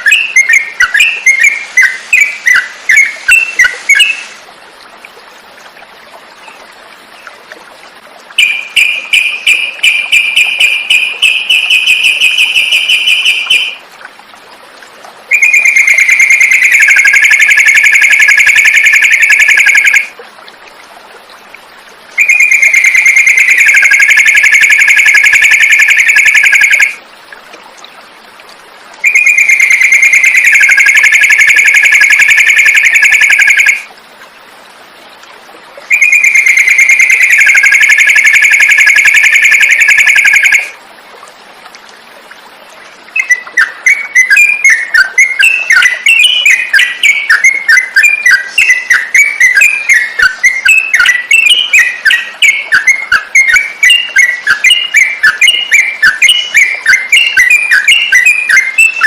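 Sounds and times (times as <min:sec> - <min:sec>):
bird chirping song: 0:00.0 - 0:04.3, 0:08.4 - 0:13.8, 0:29.0 - 0:33.8, 0:43.2 - 0:59.0
songbird high trill: 0:08.4 - 0:13.8, 0:43.2 - 0:59.0.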